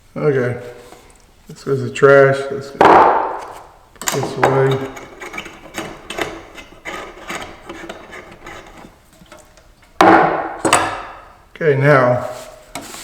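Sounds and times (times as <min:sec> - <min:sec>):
knock on workbench: 0:02.8 - 0:03.5, 0:10.0 - 0:11.0
parts rubbing and scraping on wood: 0:02.8 - 0:11.2, 0:12.2 - 0:13.0.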